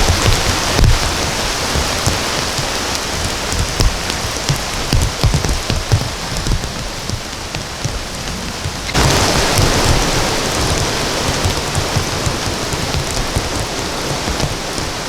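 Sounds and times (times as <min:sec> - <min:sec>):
heavy rain pattering: 0:00.0 - 0:15.0.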